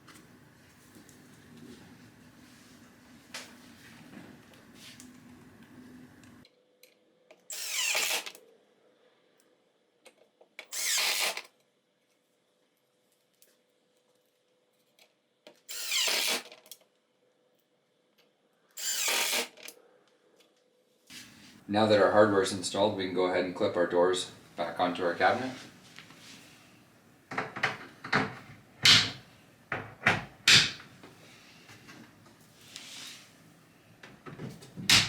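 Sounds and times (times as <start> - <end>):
power drill driving screws: 7.5 - 8.4, 10.6 - 11.5, 15.7 - 16.6, 18.8 - 19.7.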